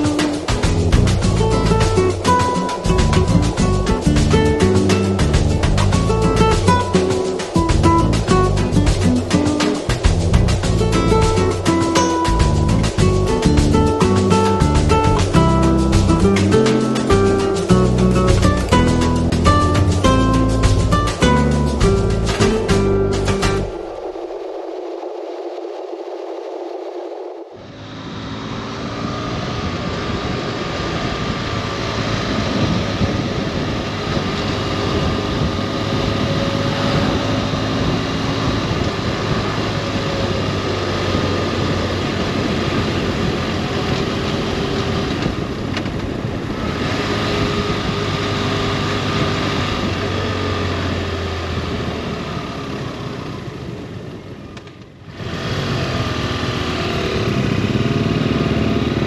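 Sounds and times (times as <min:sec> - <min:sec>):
motorcycle engine running: 0:00.0 - 0:23.8, 0:27.7 - 0:59.0
wind noise: 0:00.0 - 0:59.0.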